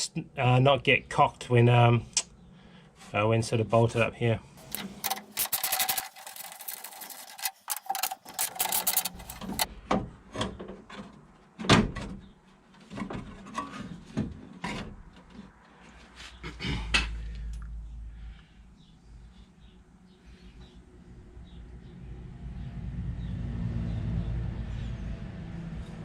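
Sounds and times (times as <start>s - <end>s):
metal tools clinking and knocking: 4.6s - 9.7s
rapid clicks: 4.6s - 9.7s.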